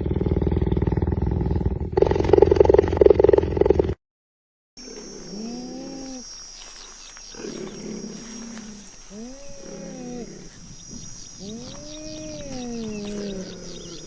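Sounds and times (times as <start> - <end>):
big cat calling: 7.3 - 14.0.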